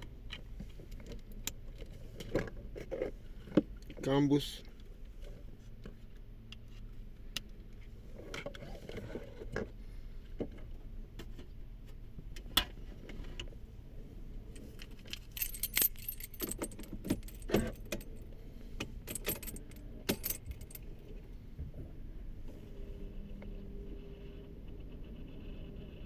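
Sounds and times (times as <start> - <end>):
keys jangling: 14.6 - 18.3, 19.0 - 20.9.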